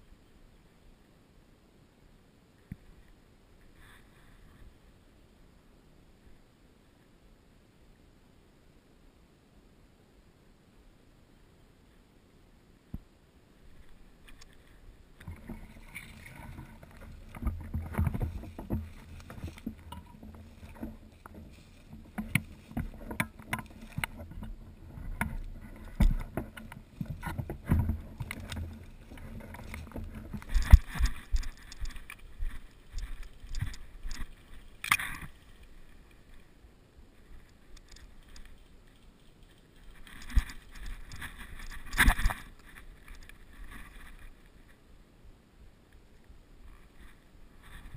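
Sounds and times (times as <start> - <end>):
low rumble of handling noise: 13.6 - 44.6
knocks and rustles: 13.8 - 36.4, 37.3 - 44.4.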